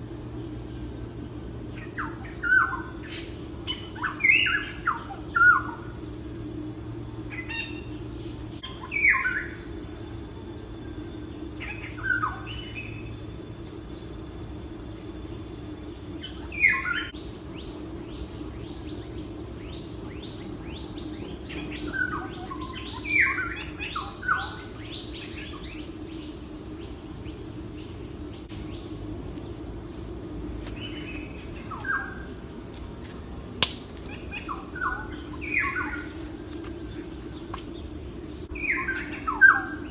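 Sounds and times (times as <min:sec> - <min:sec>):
high insect buzz: 0:00.0 - 0:39.9
low steady hum: 0:00.0 - 0:39.9
sharp click: 0:33.6 - 0:34.0.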